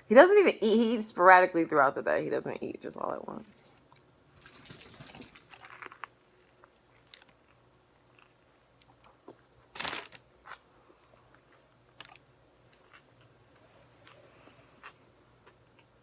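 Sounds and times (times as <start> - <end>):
chewing with crunches: 5.8 - 16.0.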